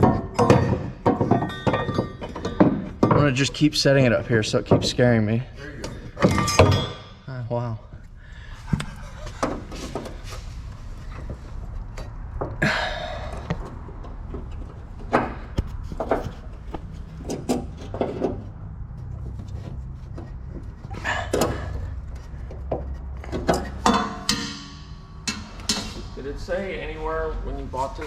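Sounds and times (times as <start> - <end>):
metal tools clinking and scraping: 0.0 - 7.3, 19.6 - 26.6.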